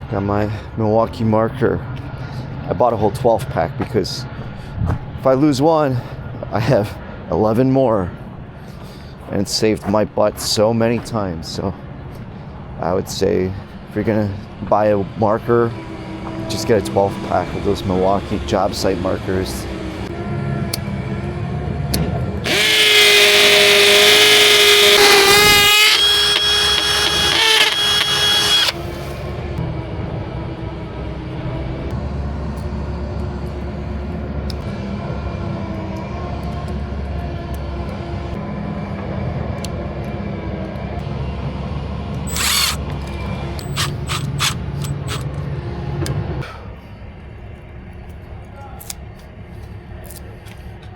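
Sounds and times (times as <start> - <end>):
power drill motor whine: 22.4 - 29.2, 42.3 - 45.3
sharp clicks: 22.5 - 28.8, 42.3 - 45.3.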